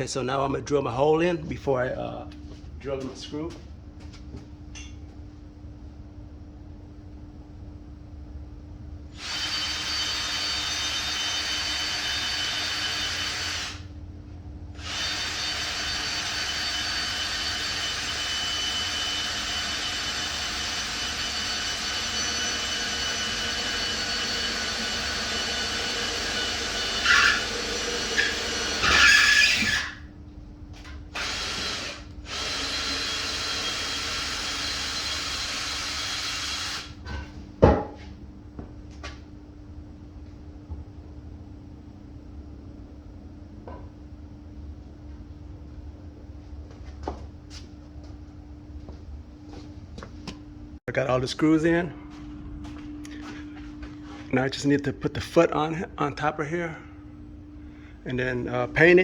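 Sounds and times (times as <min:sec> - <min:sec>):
power drill drilling into wood: 0:09.2 - 0:13.8, 0:14.8 - 0:30.0, 0:31.2 - 0:36.9.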